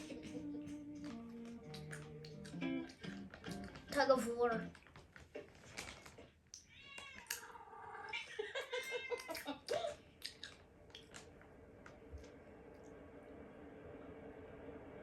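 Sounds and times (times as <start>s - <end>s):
light clicks and rustles: 3.0s - 6.4s
cat meowing: 6.6s - 9.5s.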